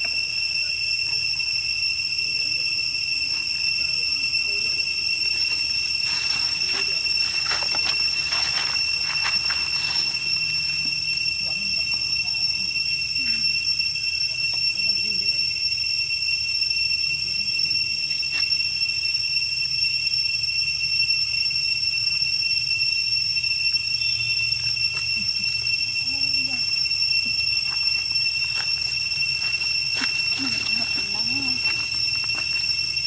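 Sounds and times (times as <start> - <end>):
high-pitched whine: 0.0 - 33.0.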